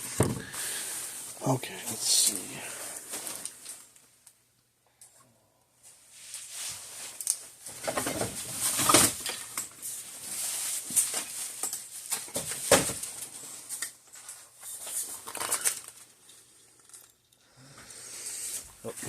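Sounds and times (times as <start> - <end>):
rustling and knocking of objects: 0.0 - 1.4, 5.8 - 16.1.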